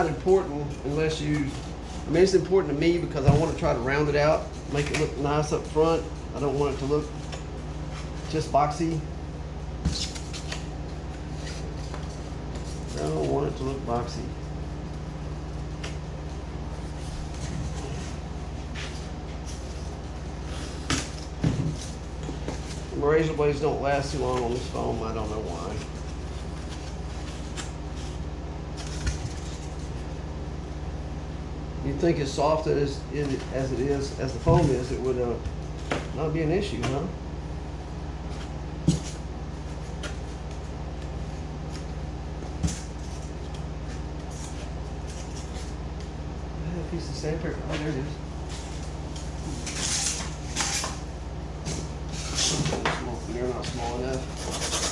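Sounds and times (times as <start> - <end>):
air conditioner humming: 0.0 - 54.9
scratchy handling noises: 47.6 - 54.9
razor blade cutting foam: 54.2 - 54.9.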